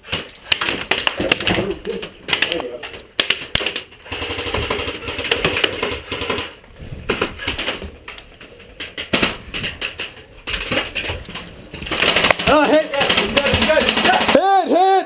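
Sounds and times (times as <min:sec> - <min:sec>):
airsoft guns firing in bursts: 0:00.0 - 0:07.8, 0:11.8 - 0:14.9.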